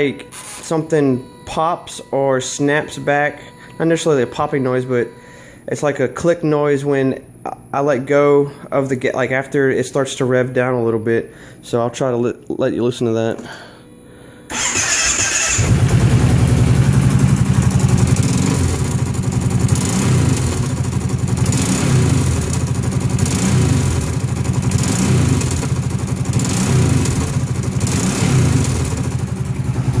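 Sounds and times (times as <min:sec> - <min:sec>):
small engine revving: 0:14.5 - 0:16.3, 0:19.6 - 0:20.6, 0:21.4 - 0:22.6, 0:23.2 - 0:29.1.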